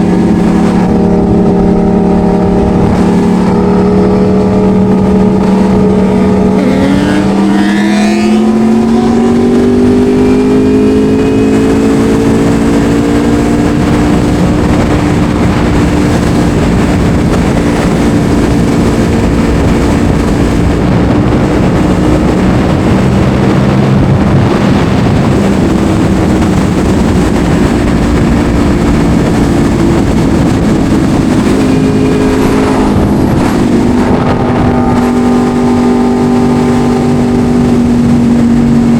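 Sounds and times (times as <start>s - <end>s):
motorcycle engine accelerating: 0.0s - 38.9s
wind and road noise: 0.0s - 38.9s.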